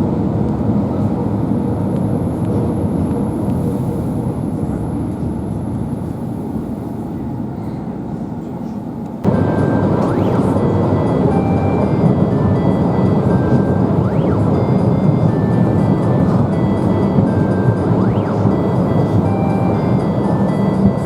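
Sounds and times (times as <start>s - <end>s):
train rumbling inside carriage: 0.0s - 21.0s
high whining tones: 9.3s - 21.0s.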